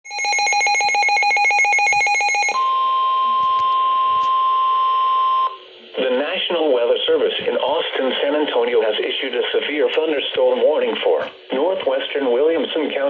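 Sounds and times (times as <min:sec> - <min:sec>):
steady alarm tone: 0:00.1 - 0:05.6.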